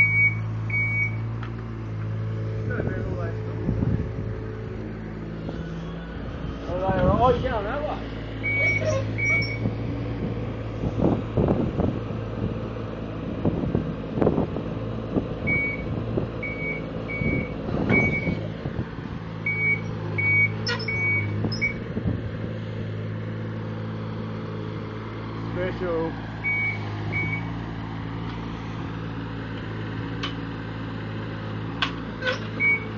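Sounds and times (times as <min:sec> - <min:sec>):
travel alarm beeps: 0:00.0 - 0:01.2, 0:08.4 - 0:09.6, 0:15.5 - 0:15.8, 0:16.4 - 0:18.4, 0:19.5 - 0:21.8, 0:26.4 - 0:27.4, 0:32.6 - 0:32.9
excavator engine running: 0:00.0 - 0:32.9.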